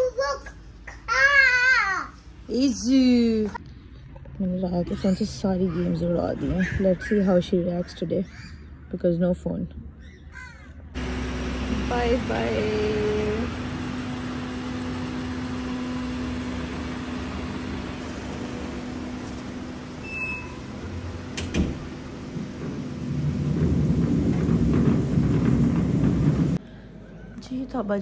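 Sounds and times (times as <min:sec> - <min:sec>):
road noise: 0:02.2 - 0:27.6
car engine running: 0:11.0 - 0:26.6.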